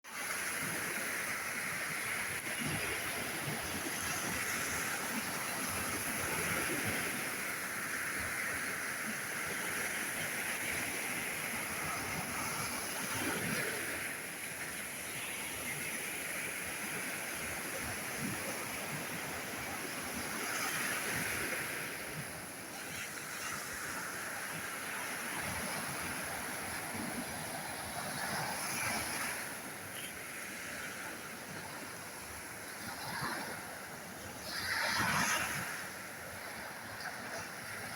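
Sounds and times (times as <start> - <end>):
sea surf washing onto shore: 0.1 - 37.9.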